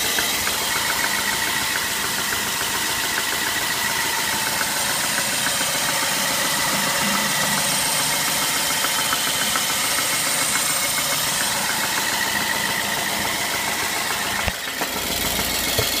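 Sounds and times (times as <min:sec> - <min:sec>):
car engine idling: 0:00.0 - 0:16.0
fast light engine knocking: 0:00.0 - 0:16.0.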